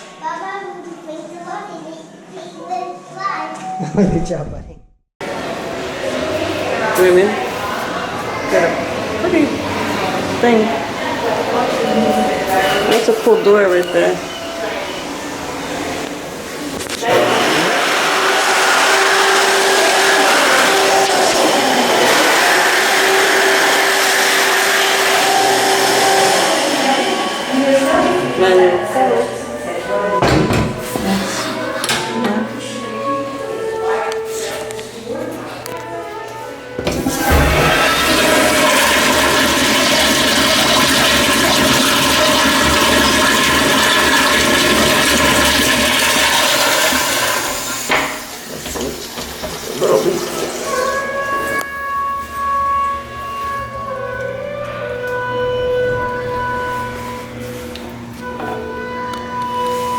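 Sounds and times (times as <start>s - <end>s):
toilet flushing: 5.2s - 32.6s, 36.8s - 51.7s.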